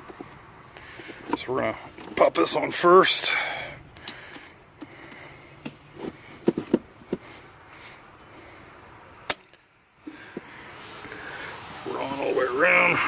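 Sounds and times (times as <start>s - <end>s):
parts knocking and clicking: 0.0s - 0.4s, 4.0s - 7.3s.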